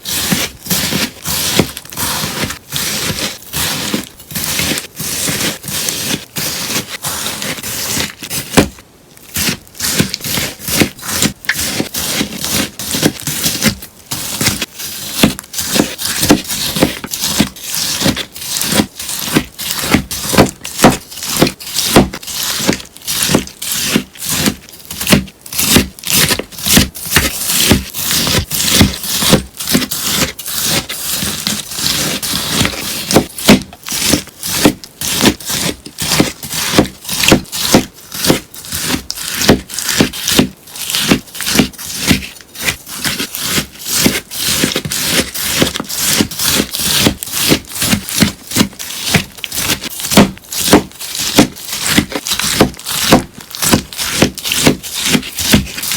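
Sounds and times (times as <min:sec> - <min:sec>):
scissors snipping sponge: 0:00.0 - 0:55.9.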